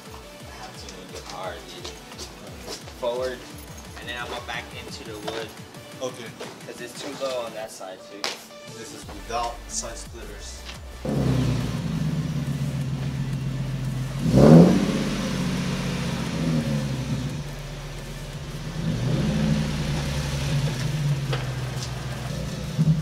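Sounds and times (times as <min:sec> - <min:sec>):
car engine running: 0:09.2 - 0:23.0
engine revving: 0:09.2 - 0:23.0.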